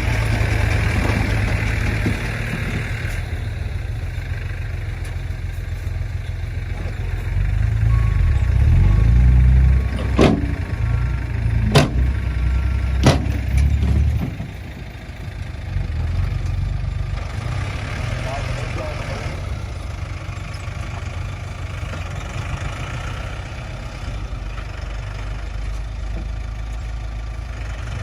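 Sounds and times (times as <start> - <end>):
tractor engine rumbling: 0.0 - 28.0
sharp knocks: 11.6 - 12.2.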